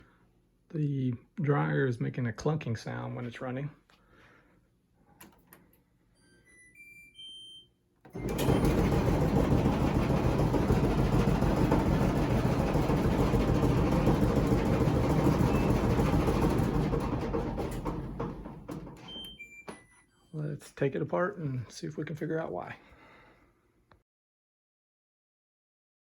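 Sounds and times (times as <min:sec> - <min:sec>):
dryer running loudly: 0:08.1 - 0:19.1
dryer drum clunking knock: 0:08.2 - 0:19.2.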